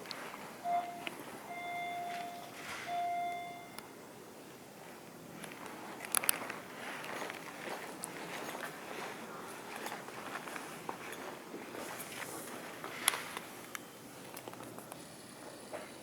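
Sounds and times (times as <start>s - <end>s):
electronic beeps: 0.6s - 3.8s.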